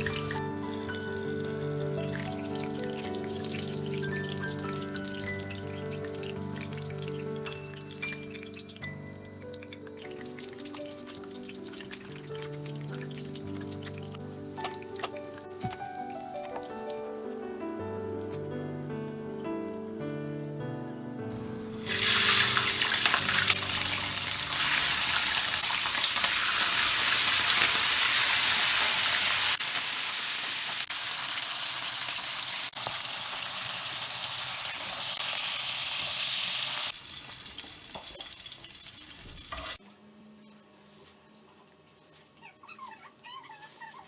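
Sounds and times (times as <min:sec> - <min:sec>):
running water rushing: 0:21.8 - 0:27.6.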